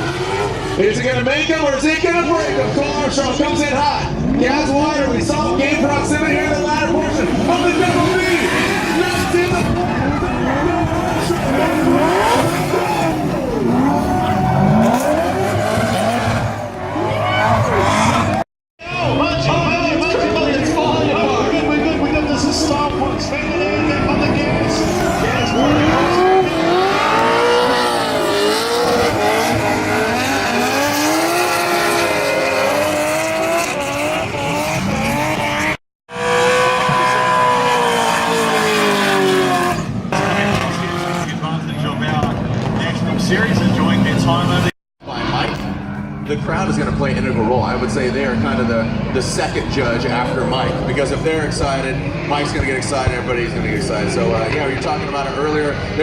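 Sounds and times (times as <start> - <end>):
car engine revving hard: 6.7 - 16.8, 23.9 - 41.5.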